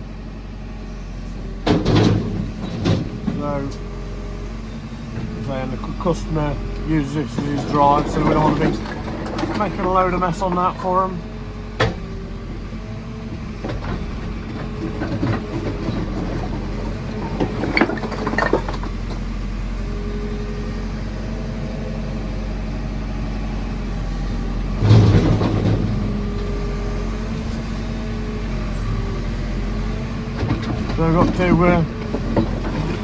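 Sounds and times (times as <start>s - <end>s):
diesel engine running: 0.0s - 33.0s.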